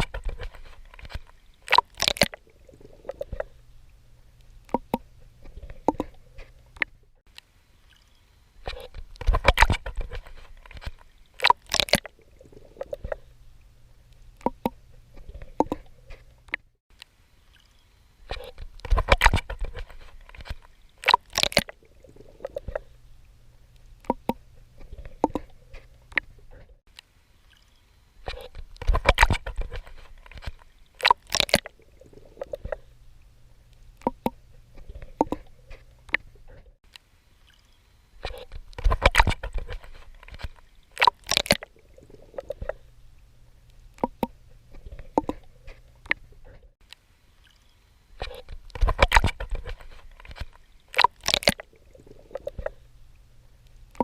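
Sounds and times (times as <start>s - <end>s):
low steady rumble: 2.5s - 7.2s, 12.2s - 16.8s, 21.8s - 26.8s, 31.8s - 37.3s, 41.7s - 47.2s, 51.6s - 54.0s
water dripping: 18.6s - 24.5s
swimming strokes splashing: 37.4s - 42.9s.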